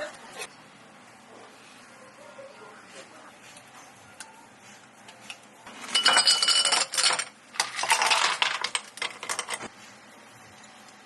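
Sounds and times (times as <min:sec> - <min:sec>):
clinking and rattling crockery: 0:05.7 - 0:09.7.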